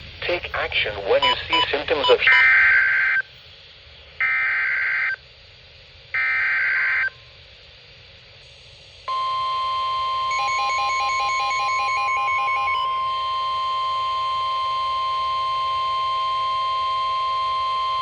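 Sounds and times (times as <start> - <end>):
fast pulsing beeps: 1.1 - 3.2
screeching digital data bursts: 1.1 - 3.3, 10.0 - 13.2
steady alarm tone: 1.2 - 3.2, 6.2 - 7.2, 9.0 - 18.0.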